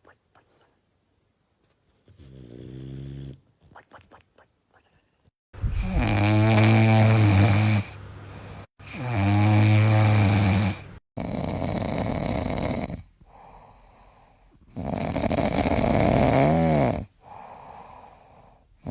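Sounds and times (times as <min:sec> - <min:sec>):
dogs snoring: 0:02.1 - 0:03.4, 0:05.8 - 0:18.9.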